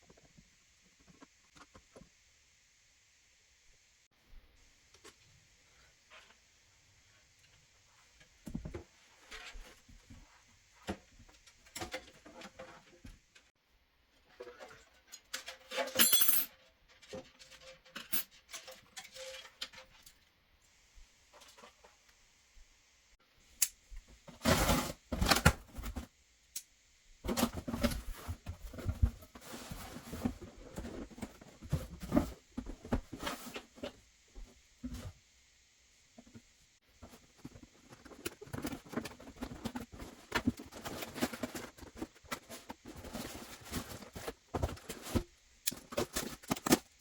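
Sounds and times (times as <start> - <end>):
small metal parts clinking: 15.7 - 16.6
rustling handling noise: 27.2 - 35.3, 36.2 - 47.0.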